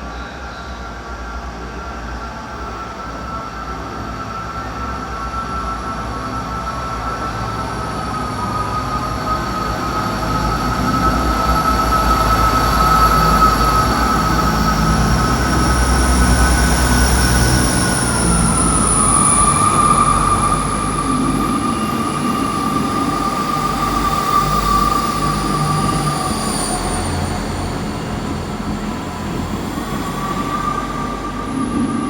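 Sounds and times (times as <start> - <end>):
train rumble: 0.0 - 32.0
train wheel squeal: 0.0 - 32.0.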